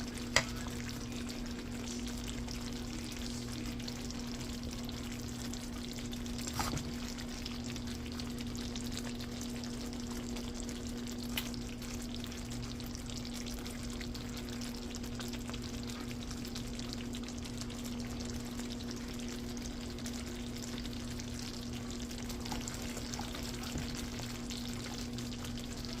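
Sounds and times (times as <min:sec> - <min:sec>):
food sizzling in a pan: 0:00.0 - 0:26.0.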